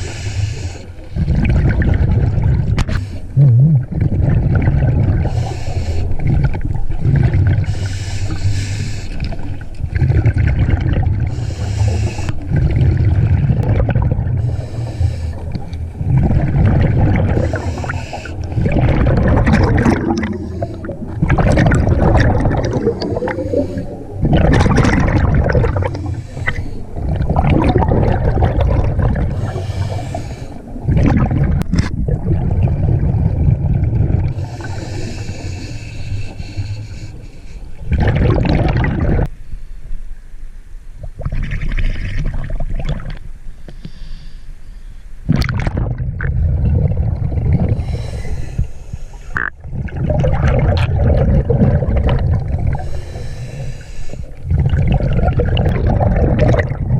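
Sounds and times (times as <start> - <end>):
regulator hissing on inhale: 0.0 - 1.0, 2.9 - 3.4, 5.2 - 6.2, 7.6 - 9.4, 11.3 - 12.5, 14.4 - 15.8, 17.4 - 18.6, 20.2 - 21.2, 23.0 - 24.2, 25.9 - 27.0, 29.3 - 30.8, 34.3 - 37.9, 43.5 - 45.2, 47.7 - 49.4, 52.7 - 54.4
bubbling exhale: 0.0 - 39.3, 45.3 - 56.9.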